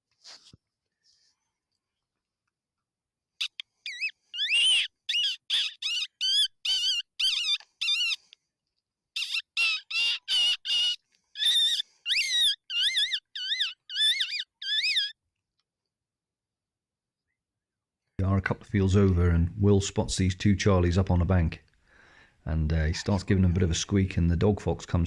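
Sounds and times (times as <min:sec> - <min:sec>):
fox call squeaker squealing: 0:03.4 - 0:08.2, 0:09.2 - 0:15.2.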